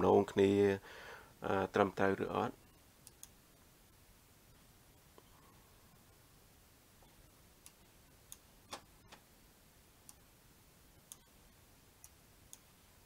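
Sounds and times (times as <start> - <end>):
computer mouse clicking: 3.0 - 3.4, 11.0 - 11.3.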